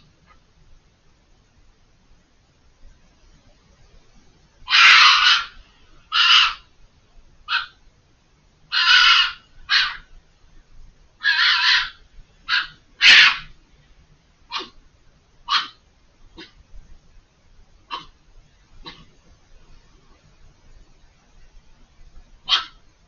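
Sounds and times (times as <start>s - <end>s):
fox screaming: 4.6s - 6.7s, 7.5s - 7.8s, 8.7s - 10.1s, 11.2s - 13.6s, 14.5s - 14.8s, 15.5s - 15.8s, 17.9s - 18.2s, 22.5s - 22.8s.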